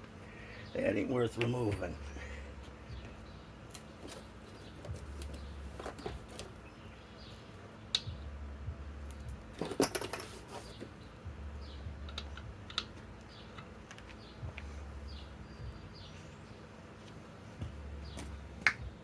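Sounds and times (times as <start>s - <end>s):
faint low hum: 0.0s - 19.0s
metal tools clinking: 3.8s - 6.5s, 9.6s - 10.9s.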